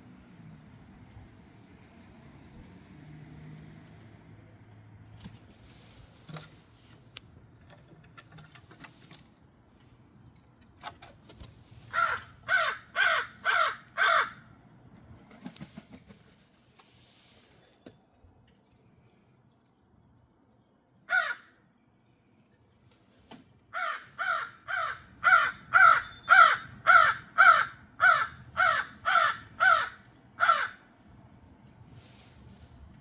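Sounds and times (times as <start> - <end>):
crow cawing: 11.9 - 14.5, 21.1 - 21.6, 23.7 - 30.9.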